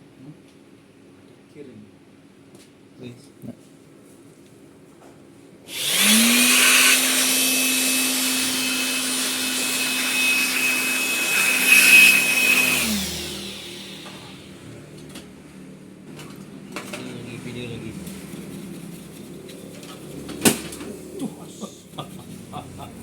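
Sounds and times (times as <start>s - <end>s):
small electric motor with air rush: 5.7s - 14.6s.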